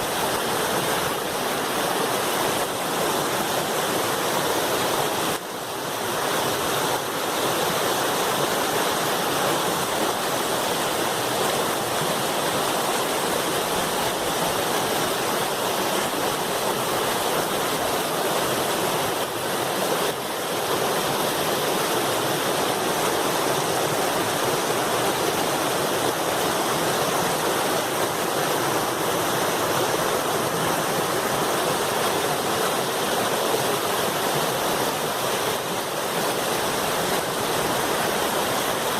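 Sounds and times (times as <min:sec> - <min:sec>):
water rushing over waterfall: 0:00.0 - 0:38.9.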